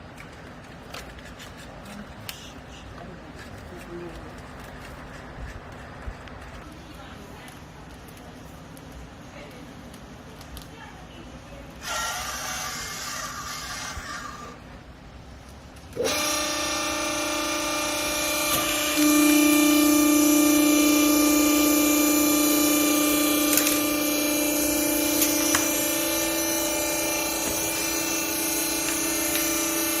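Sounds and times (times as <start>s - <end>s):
hydraulic baler machine whine: 15.9s - 30.0s.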